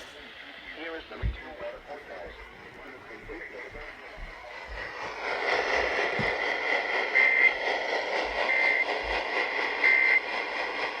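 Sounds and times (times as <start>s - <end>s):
steady noise floor: 0.0s - 6.7s.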